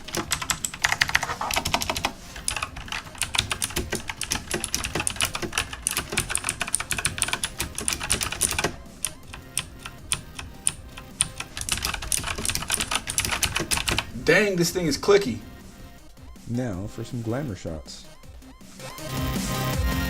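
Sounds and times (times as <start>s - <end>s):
mechanical keyboard typing: 0.0s - 14.1s.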